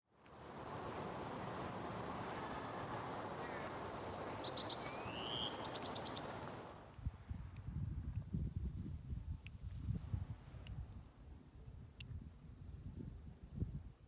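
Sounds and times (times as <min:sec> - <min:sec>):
steady rushing background noise: 0:00.4 - 0:06.8
small birds chirping: 0:00.4 - 0:06.9.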